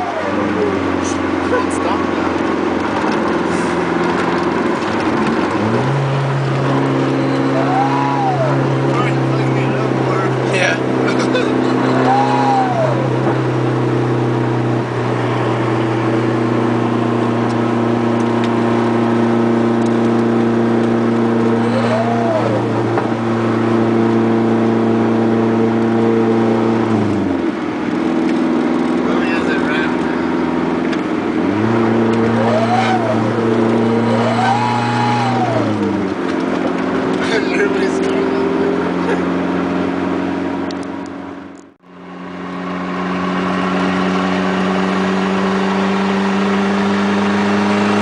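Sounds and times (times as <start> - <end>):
car engine idling: 0.0 - 24.7, 26.6 - 44.6
high whining tone: 5.8 - 10.4, 21.2 - 24.0, 31.5 - 36.2.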